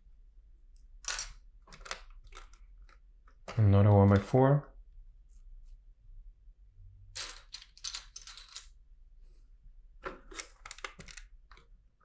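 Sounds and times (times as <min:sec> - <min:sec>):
plastic bricks clicking and clattering: 0:01.0 - 0:03.0, 0:07.2 - 0:08.8, 0:10.2 - 0:11.7.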